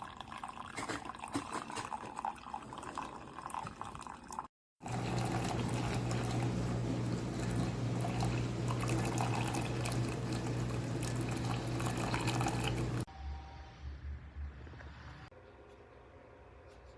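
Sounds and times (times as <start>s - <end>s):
water streaming into cup: 0.0s - 13.1s
coffee maker low hum: 4.8s - 13.1s.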